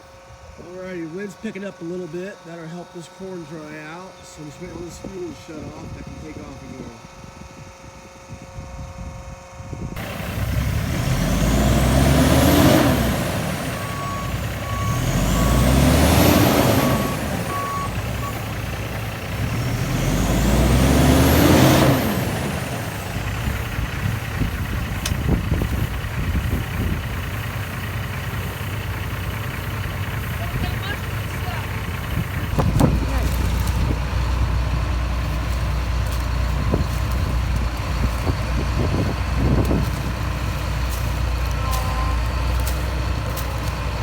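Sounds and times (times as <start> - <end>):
heavy vehicles passing: 10.0 - 44.0.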